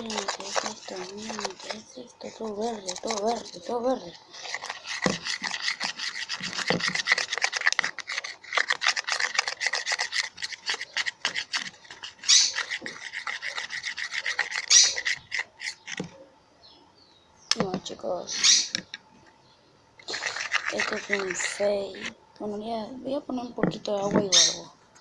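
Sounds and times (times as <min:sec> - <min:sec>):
slime being stirred: 0:00.0 - 0:16.1, 0:20.0 - 0:22.2.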